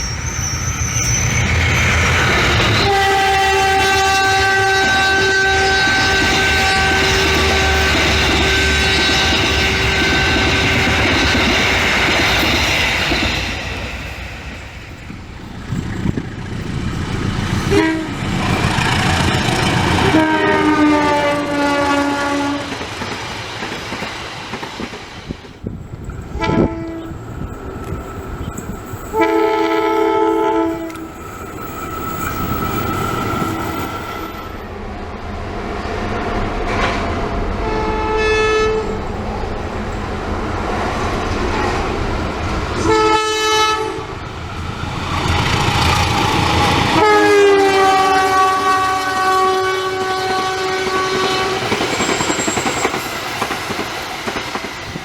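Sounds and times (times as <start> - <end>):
train rumbling on rails: 0.0 - 55.0
locomotive horn blasts: 2.8 - 11.3, 17.7 - 18.6, 19.9 - 22.7, 26.3 - 27.2, 29.1 - 31.1, 37.6 - 39.0, 42.8 - 44.2, 47.0 - 51.7.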